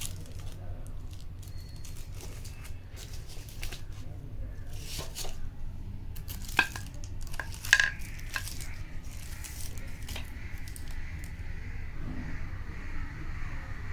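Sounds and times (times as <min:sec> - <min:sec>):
slate pieces clinking: 0:06.2 - 0:11.0.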